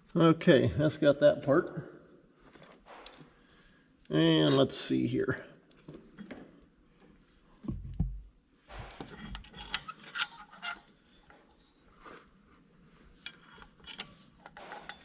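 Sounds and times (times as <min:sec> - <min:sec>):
small metal parts clinking: 0:13.2 - 0:15.0.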